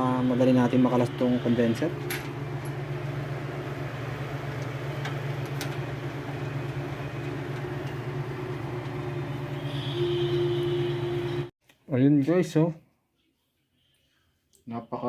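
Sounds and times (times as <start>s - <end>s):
low machine hum: 0.0s - 11.5s.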